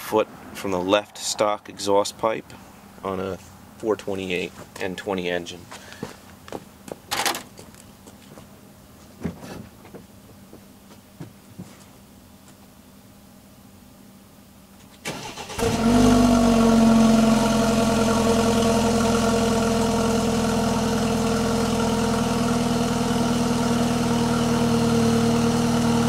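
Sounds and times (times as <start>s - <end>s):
car engine idling: 15.1s - 26.0s.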